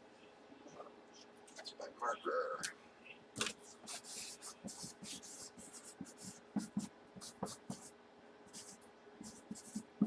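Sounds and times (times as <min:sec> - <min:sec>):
scratchy marker strokes: 0:03.4 - 0:07.9, 0:08.5 - 0:10.0.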